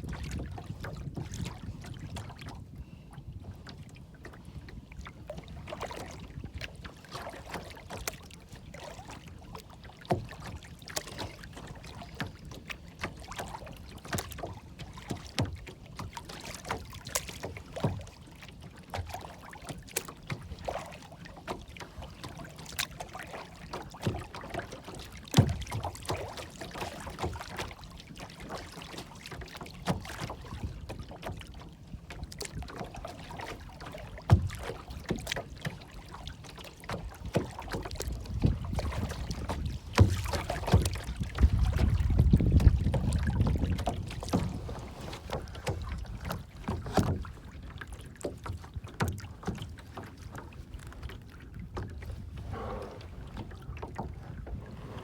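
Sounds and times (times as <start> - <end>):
wind rumble on microphone: 0.0 - 7.2, 29.9 - 32.8, 37.0 - 47.7, 51.0 - 55.0
water lapping and splashing: 0.0 - 55.0.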